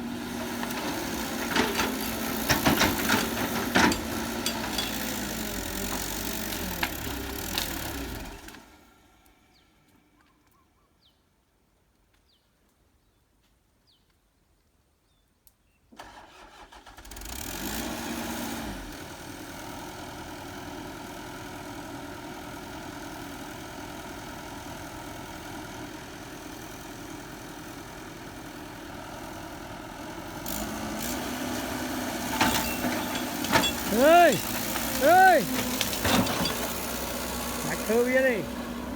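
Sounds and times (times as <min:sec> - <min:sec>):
diesel engine running: 0:00.0 - 0:09.2, 0:19.6 - 0:38.9.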